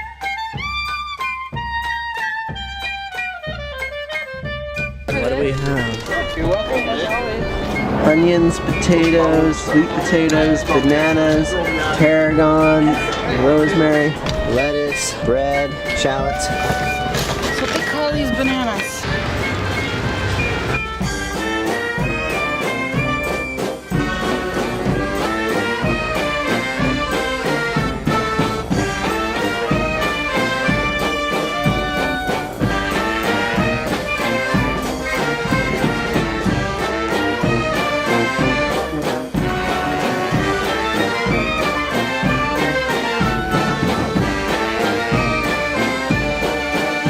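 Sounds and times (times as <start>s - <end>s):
brass band music: 0.0s - 47.0s.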